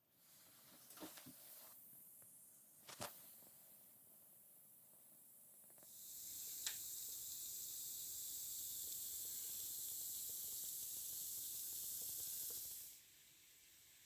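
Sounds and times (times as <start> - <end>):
fizzing hiss of gas bubbles: 5.8 - 14.0.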